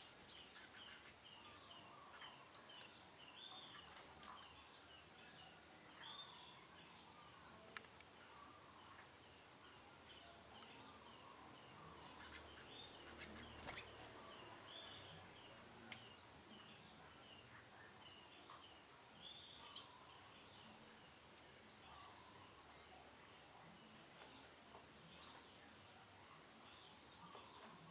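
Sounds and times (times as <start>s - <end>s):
canaries chirping: 0.0s - 5.2s, 8.5s - 23.0s.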